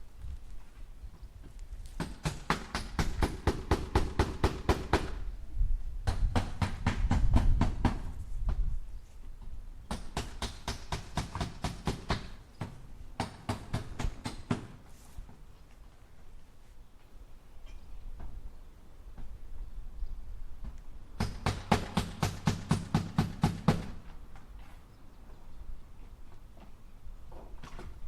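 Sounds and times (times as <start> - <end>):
hammer striking nails into wood: 2.0 - 5.2, 6.0 - 8.1, 9.9 - 14.8, 21.2 - 23.9.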